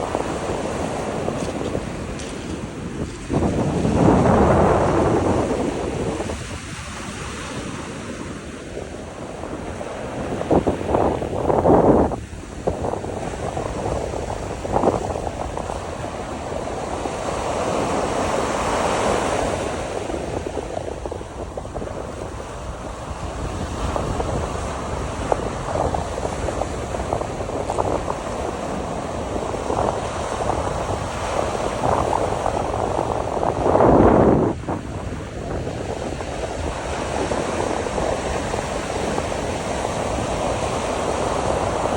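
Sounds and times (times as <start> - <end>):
sea waves breaking: 0.0 - 41.9
wind on microphone: 0.0 - 41.9.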